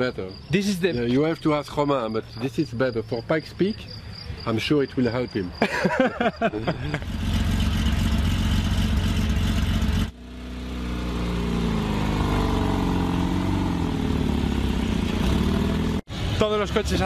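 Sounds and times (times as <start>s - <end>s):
car engine revving lightly: 6.8s - 16.1s
car engine running: 6.9s - 16.0s.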